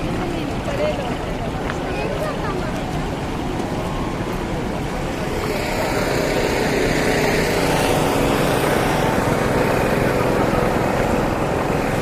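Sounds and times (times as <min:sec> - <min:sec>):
truck diesel engine running: 0:04.4 - 0:12.0.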